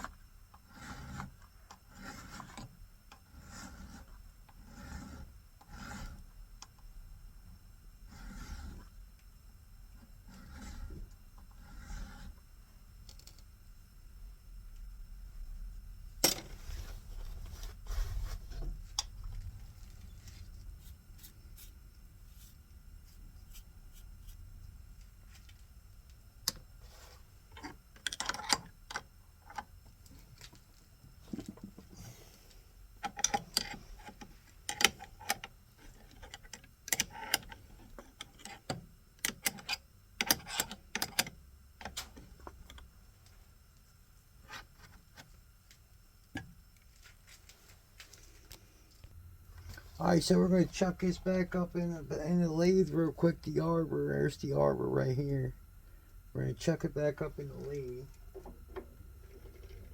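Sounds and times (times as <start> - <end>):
low hum: 6.0 - 27.9.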